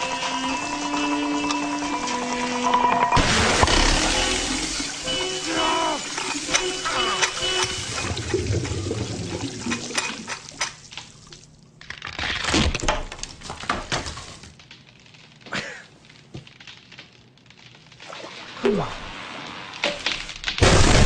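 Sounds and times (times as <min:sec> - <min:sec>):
water gushing and splashing: 0:03.2 - 0:11.5, 0:18.0 - 0:19.8.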